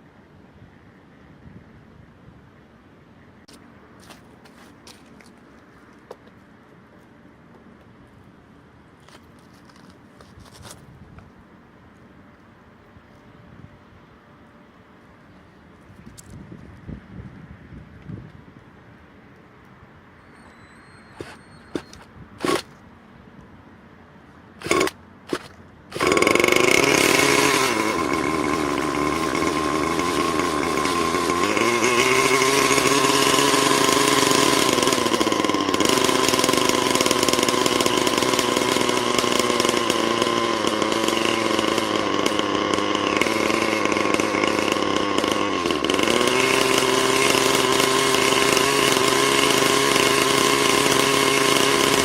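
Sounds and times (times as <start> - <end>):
small nitro engine running: 20.5 - 22.7, 24.6 - 52.0.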